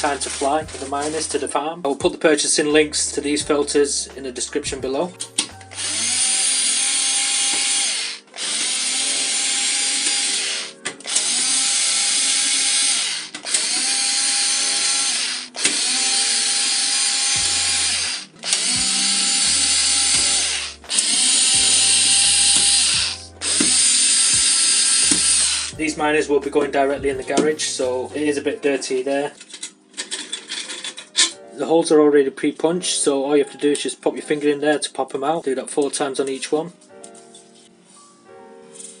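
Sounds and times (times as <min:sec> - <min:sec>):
cordless drill driving screws: 0:05.7 - 0:25.8.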